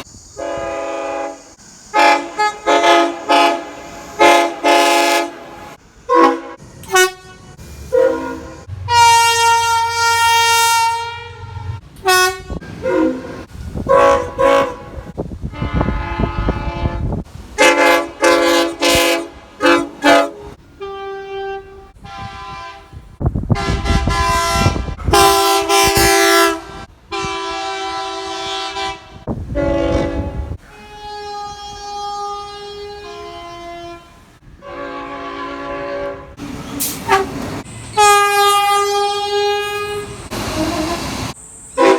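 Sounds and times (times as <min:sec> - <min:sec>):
rumble of passing trains: 0:00.0 - 0:41.9
train air horn blasts: 0:00.0 - 0:41.9.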